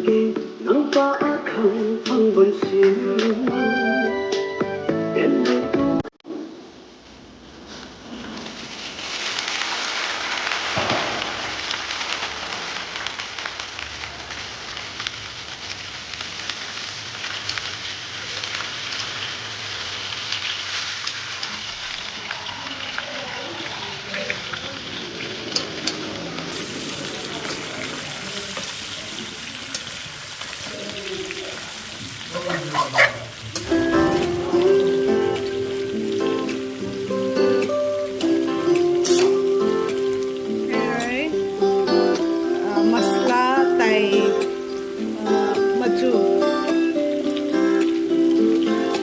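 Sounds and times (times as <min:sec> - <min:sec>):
food sizzling in hot oil: 0:08.0 - 0:49.0
person speaking: 0:40.7 - 0:41.4, 0:42.4 - 0:44.4.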